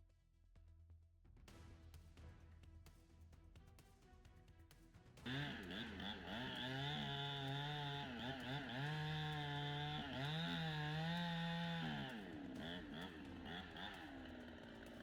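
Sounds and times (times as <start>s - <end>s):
chainsaw cutting wood: 5.3s - 15.0s.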